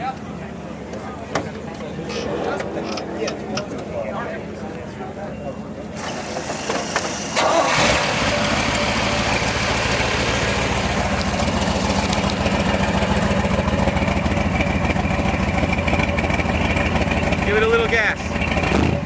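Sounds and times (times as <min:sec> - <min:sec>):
engine starting and idling: 0:06.0 - 0:19.0.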